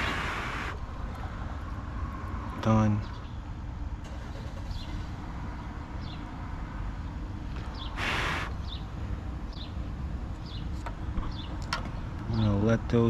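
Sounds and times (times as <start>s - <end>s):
low background rumble: 0.0s - 13.0s
short hiss: 8.0s - 8.6s.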